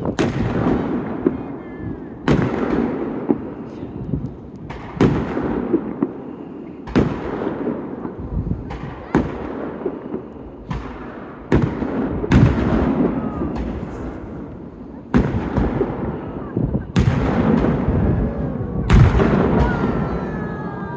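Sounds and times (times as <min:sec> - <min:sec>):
small firework pops: 0:02.3 - 0:06.2, 0:08.6 - 0:09.5, 0:10.1 - 0:15.9
continuous rumble: 0:11.9 - 0:20.9.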